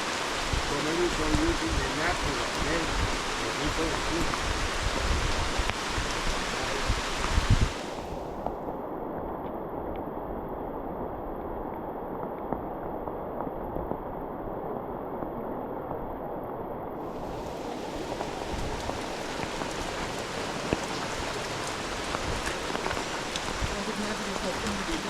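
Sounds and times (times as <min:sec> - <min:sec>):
rain falling: 0:00.0 - 0:25.0
water drips: 0:17.0 - 0:25.0.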